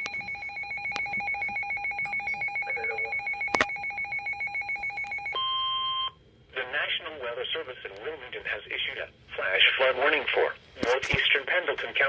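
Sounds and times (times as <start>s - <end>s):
electronic alert tone trill: 0.0s - 5.3s.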